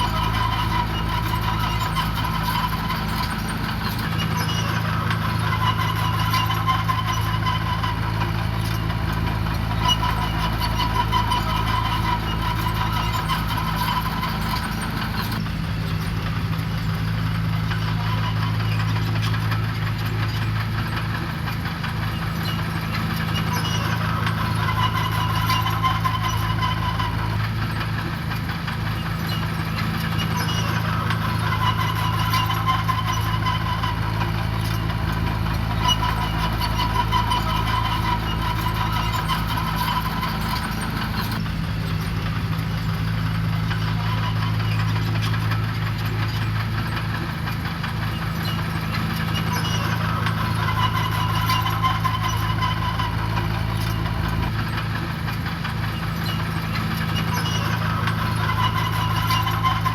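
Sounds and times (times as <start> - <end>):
diesel engine running: 0.0 - 59.9
high machine whine: 22.3 - 59.9.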